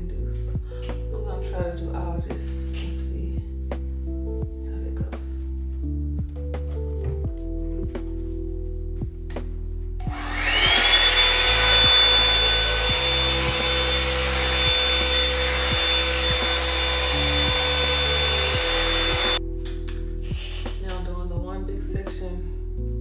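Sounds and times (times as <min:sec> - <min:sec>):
background music: 0:00.0 - 0:23.0
blow dryer brush running: 0:10.0 - 0:19.4.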